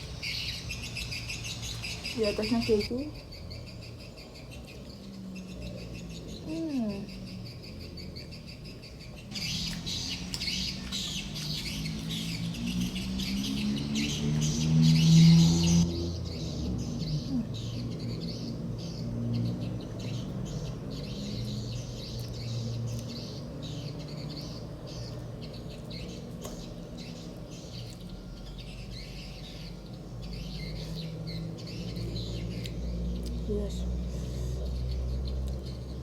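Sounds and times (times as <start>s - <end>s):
chewing with wet mouth clicks: 25.8s - 26.7s, 32.0s - 33.4s, 35.4s - 35.8s.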